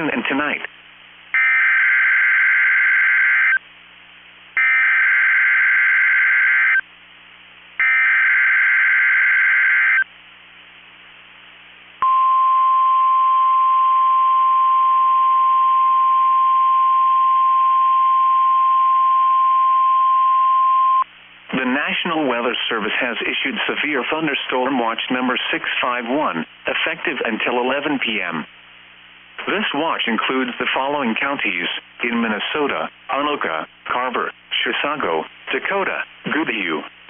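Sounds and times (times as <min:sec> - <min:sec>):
steady warning alarm tone: 0:01.4 - 0:03.6, 0:07.8 - 0:10.1.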